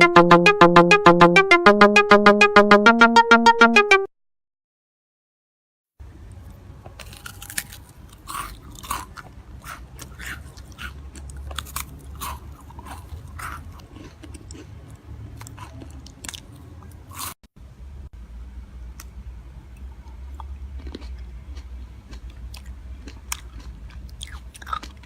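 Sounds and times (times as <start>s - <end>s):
crunchy food chewing: 7.0s - 17.4s, 20.3s - 25.0s.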